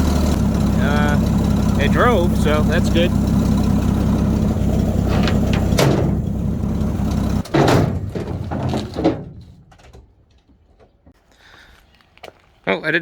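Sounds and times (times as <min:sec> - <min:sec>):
engine running: 0:00.0 - 0:09.5
clunks and knocks: 0:00.0 - 0:11.2.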